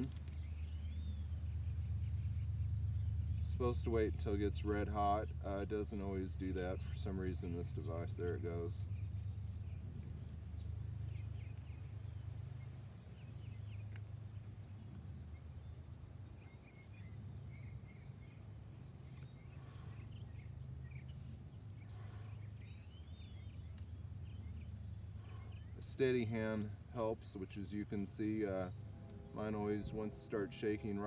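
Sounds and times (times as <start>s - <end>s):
low background rumble: 0.0s - 31.0s
bird chirps: 6.3s - 25.8s.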